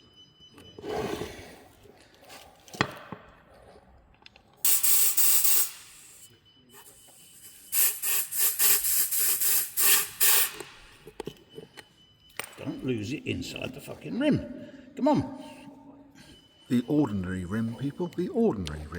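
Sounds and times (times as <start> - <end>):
air hissing: 4.6 - 11.0.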